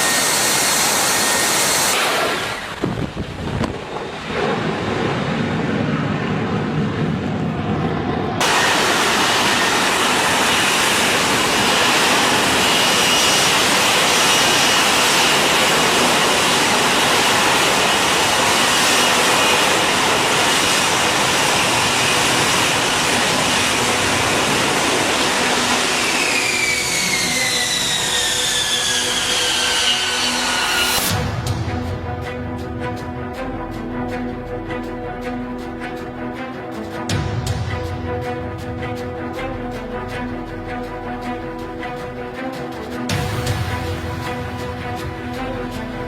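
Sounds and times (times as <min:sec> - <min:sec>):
jet engine whining: 0:00.0 - 0:31.4.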